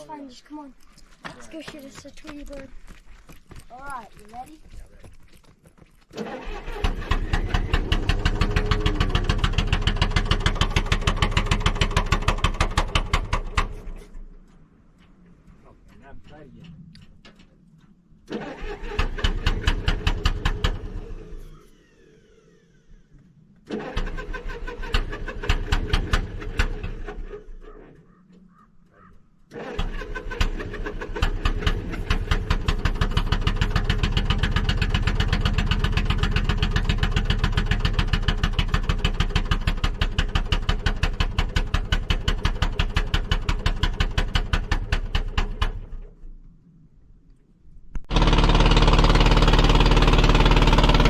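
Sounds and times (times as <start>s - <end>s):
engine cranking over: 6.0s - 14.3s, 18.2s - 28.1s, 29.5s - 46.3s, 48.0s - 51.0s.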